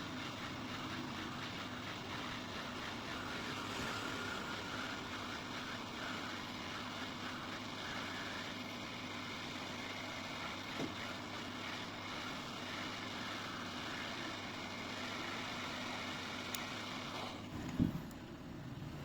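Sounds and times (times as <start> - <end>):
hot-air station hissing: 1.8 - 9.2.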